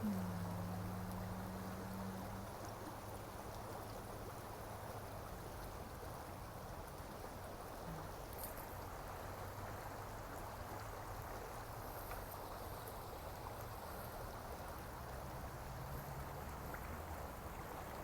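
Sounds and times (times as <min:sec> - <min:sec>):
low hum: 0:00.0 - 0:02.5
running water: 0:00.0 - 0:18.0.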